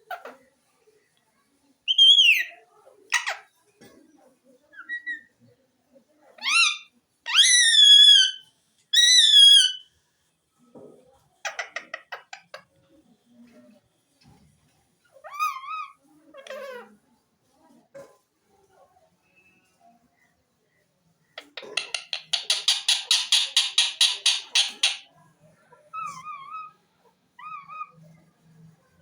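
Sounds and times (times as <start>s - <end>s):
parrot whistle-like calls: 9.0s - 9.8s
parrot rattling clicks: 21.8s - 25.1s.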